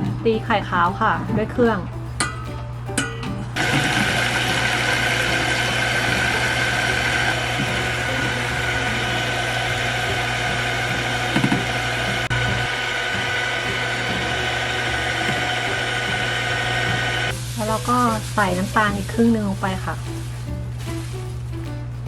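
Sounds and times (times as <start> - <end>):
electric mixer whining: 3.6 - 17.5.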